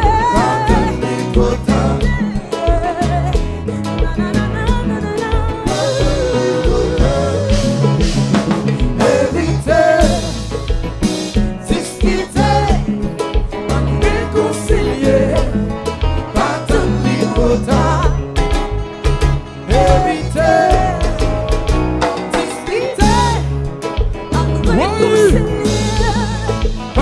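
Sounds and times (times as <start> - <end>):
person singing: 0.0 - 3.4, 4.2 - 8.2, 19.7 - 21.7, 24.3 - 27.0
bass guitar: 0.0 - 27.0
drum kit: 0.0 - 27.0
electric guitar: 0.0 - 27.0.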